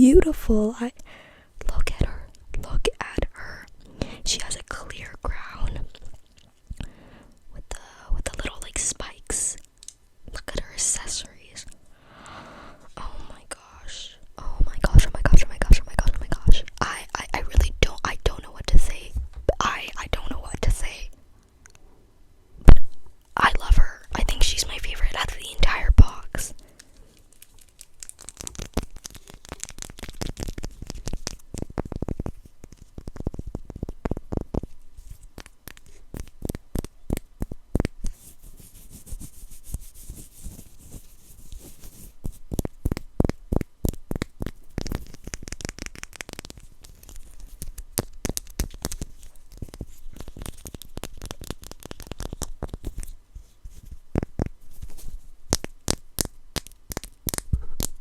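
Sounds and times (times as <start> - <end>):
paper and plastic crinkling: 26.6 - 36.6.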